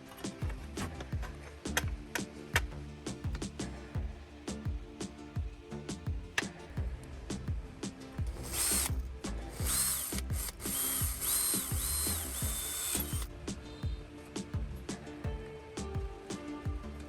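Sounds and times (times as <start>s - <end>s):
background music with plucked notes: 0.0s - 17.0s
power tool motor whirring: 8.3s - 13.4s.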